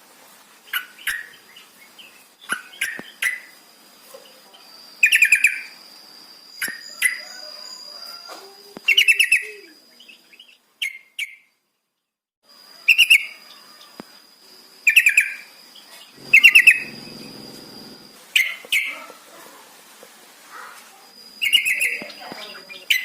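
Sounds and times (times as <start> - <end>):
bulbul singing quick notes: 16.2 - 18.2
thin steady high tone: 16.2 - 18.2.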